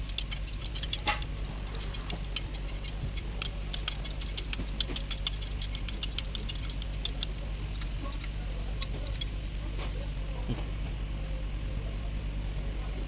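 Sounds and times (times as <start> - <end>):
hand tools clinking on metal: 0.0 - 10.0
steady low hum: 0.0 - 11.8.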